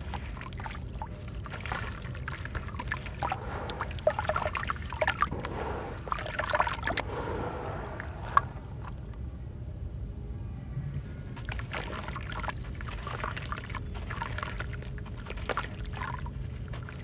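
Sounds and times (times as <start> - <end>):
fizzing water trickle: 0.0 - 7.0, 11.4 - 17.0.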